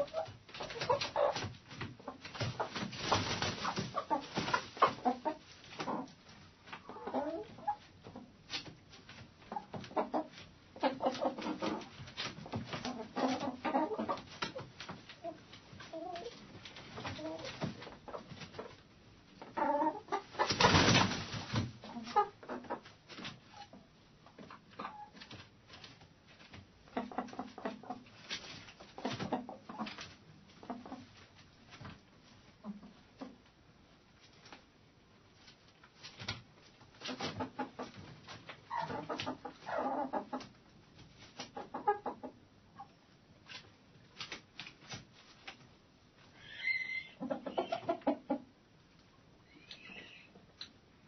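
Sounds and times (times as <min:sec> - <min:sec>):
hens clucking: 0:00.0 - 0:23.8, 0:24.4 - 0:25.4, 0:26.9 - 0:31.2, 0:37.0 - 0:43.6, 0:46.2 - 0:48.6, 0:49.4 - 0:50.6.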